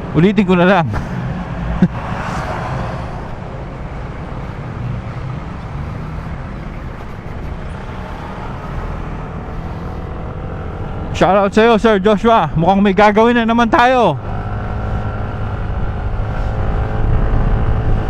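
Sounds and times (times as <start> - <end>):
wind rumble: 0.0 - 11.2.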